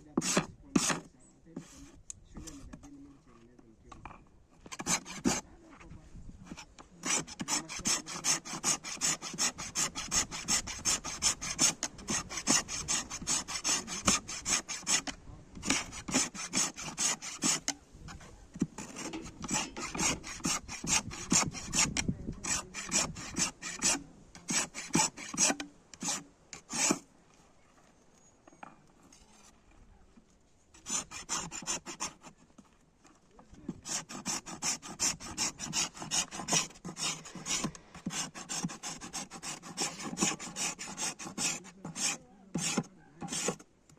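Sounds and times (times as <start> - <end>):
hand file rasping: 0.0 - 1.8, 4.6 - 5.5, 6.5 - 27.0, 30.8 - 32.7, 33.7 - 43.7.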